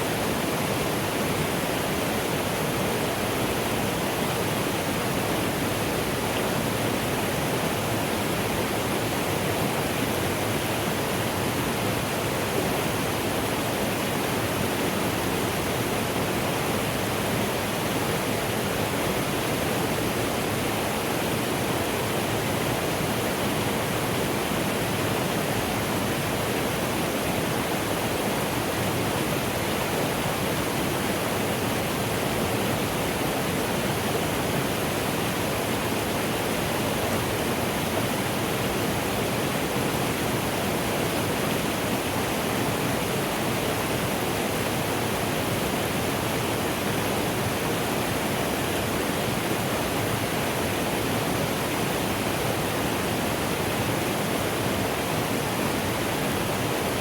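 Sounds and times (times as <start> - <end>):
mountain stream rushing: 0.0 - 57.0.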